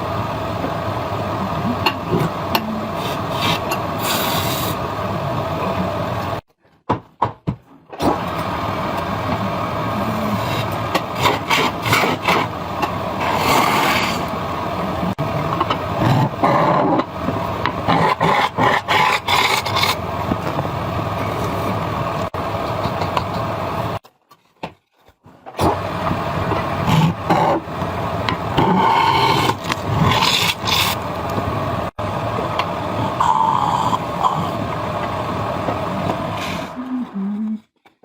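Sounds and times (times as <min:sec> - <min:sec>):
wood lathe running: 0:08.2 - 0:24.0, 0:25.8 - 0:36.8
turning tool scraping wood: 0:10.3 - 0:12.6, 0:13.2 - 0:14.3, 0:17.9 - 0:20.6, 0:28.3 - 0:31.0.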